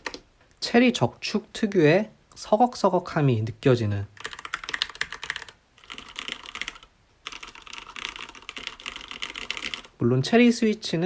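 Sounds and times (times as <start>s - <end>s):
mechanical keyboard typing: 4.2s - 9.9s.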